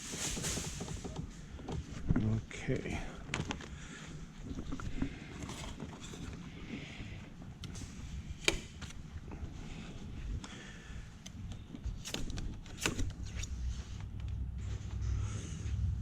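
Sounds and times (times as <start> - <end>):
handling clicks and knocks: 0.0 - 3.8
low steady rumble: 13.5 - 16.0.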